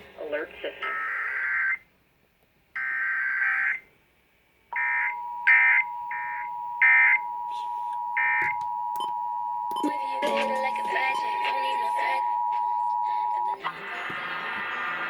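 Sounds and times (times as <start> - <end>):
two-tone attention signal: 4.8 - 13.6.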